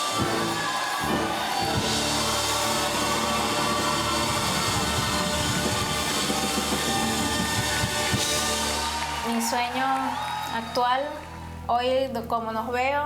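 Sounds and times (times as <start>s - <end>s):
instrumental music with drum kit: 0.0s - 9.3s.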